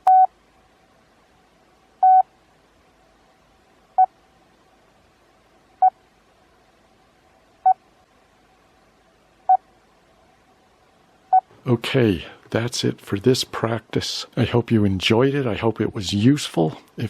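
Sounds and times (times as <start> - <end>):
morse code beeps: 0.0 - 0.3, 2.0 - 2.3.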